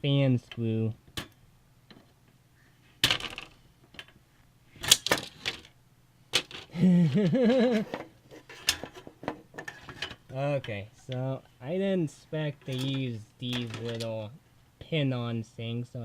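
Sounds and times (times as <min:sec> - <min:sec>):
computer parts clicking and knocking: 0:12.6 - 0:14.1.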